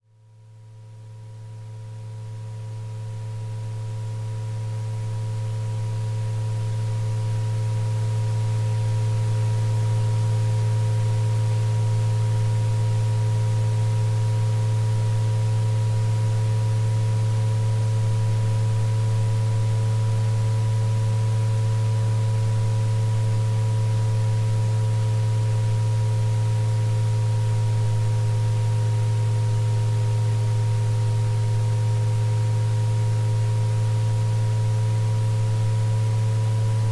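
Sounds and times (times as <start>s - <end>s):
low synthesized hum: 35.4s - 36.9s.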